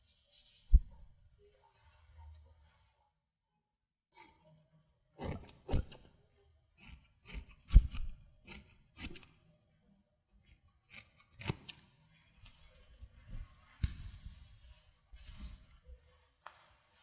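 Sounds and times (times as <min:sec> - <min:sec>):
scissors snipping hair: 0:05.2 - 0:06.1, 0:06.8 - 0:09.3, 0:10.4 - 0:12.2.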